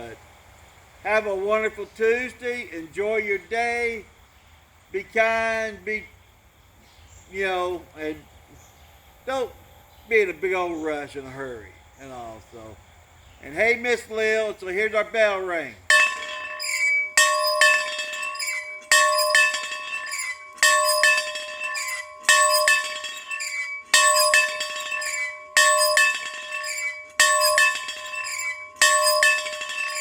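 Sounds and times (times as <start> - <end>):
bell ringing in pairs of strokes: 15.9 - 30.0.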